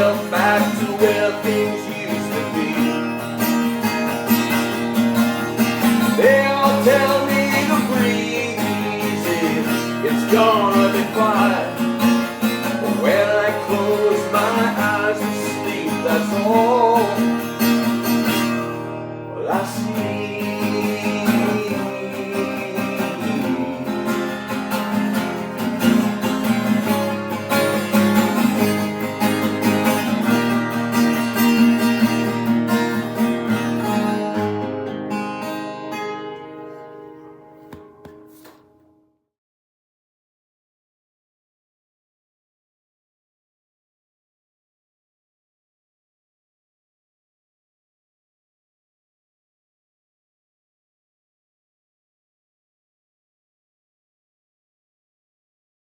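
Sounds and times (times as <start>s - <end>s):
acoustic guitar strumming: 0.0s - 39.0s.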